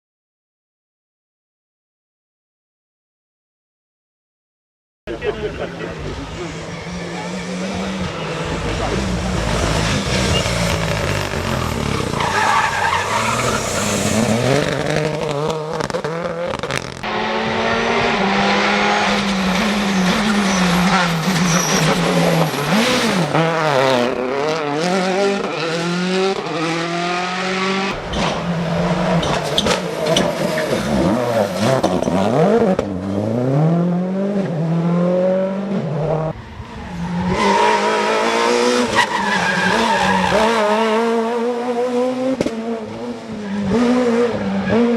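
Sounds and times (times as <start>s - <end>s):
rally car engines revving: 5.1s - 44.9s
cars sweeping past: 5.9s - 44.9s.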